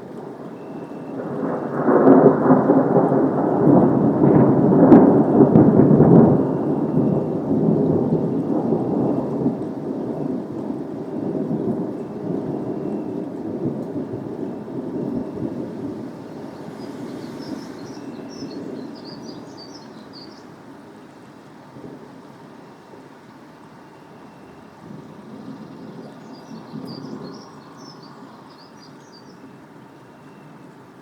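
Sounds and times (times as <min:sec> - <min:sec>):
rolling thunder: 0:00.0 - 0:20.5, 0:24.4 - 0:28.6
rain: 0:00.0 - 0:31.0.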